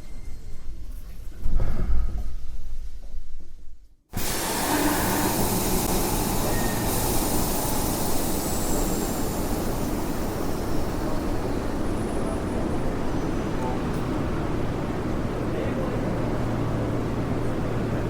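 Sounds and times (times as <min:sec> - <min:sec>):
moving train rumble and hiss: 0:04.2 - 0:18.0.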